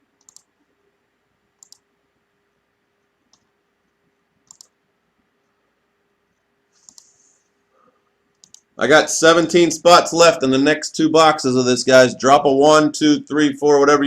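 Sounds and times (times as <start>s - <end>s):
low steady hum: 0.0s - 14.0s
computer mouse clicks: 0.2s - 0.5s, 1.6s - 1.9s, 3.3s - 3.5s, 4.4s - 4.8s, 6.3s - 7.4s, 8.3s - 8.7s.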